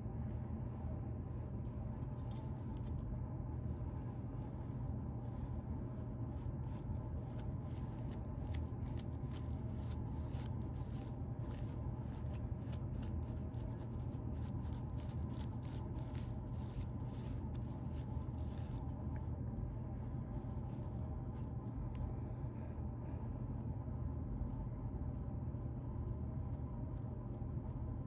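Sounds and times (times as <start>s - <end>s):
steady low hum: 0.0s - 28.0s
fingernails scratching a beard: 5.3s - 18.9s.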